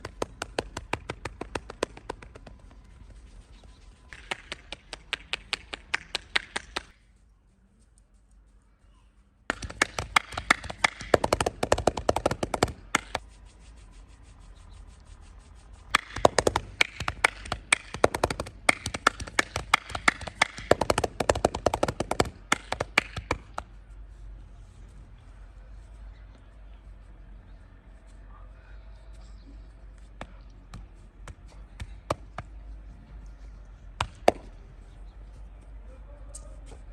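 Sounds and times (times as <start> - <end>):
hand slaps and taps of massage: 0.0 - 2.5, 4.1 - 7.0, 9.5 - 13.2, 15.9 - 23.7.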